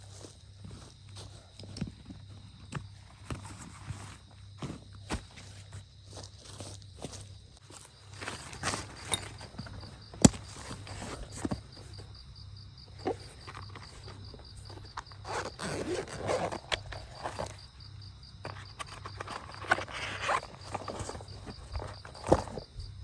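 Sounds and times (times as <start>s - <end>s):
rustling and scraping: 0.0s - 12.2s, 12.8s - 17.8s, 18.4s - 23.0s
crickets chirping: 0.0s - 23.0s
zip pulls: 13.0s - 17.5s, 19.7s - 21.0s.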